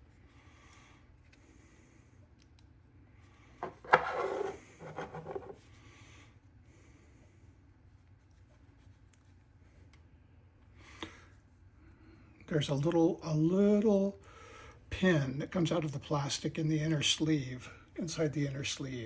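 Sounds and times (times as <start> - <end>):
rubbing and scraping of parts: 3.6 - 5.6.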